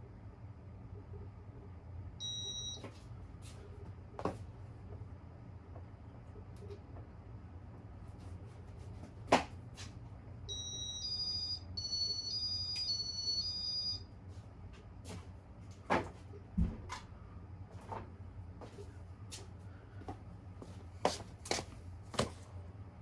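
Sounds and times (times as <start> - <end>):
ceiling fan motor hum: 0.0 - 23.0
high electronic beeps tune: 10.5 - 14.0.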